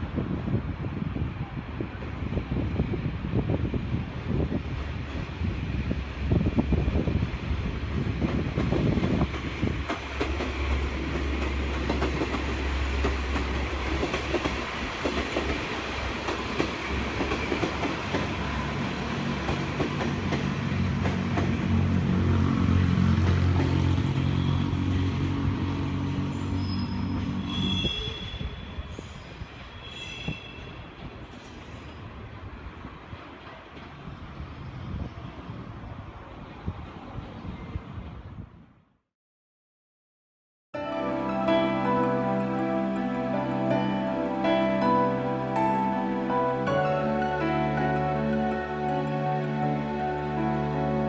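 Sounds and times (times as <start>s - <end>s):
train wheels clattering on rails: 7.2s - 21.9s
brief high-pitched tones: 40.8s - 51.0s.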